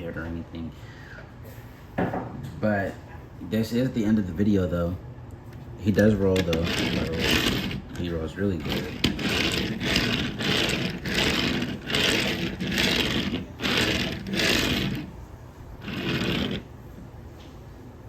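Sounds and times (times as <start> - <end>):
toy wheels rolling rattle: 6.3 - 15.1, 15.8 - 16.7.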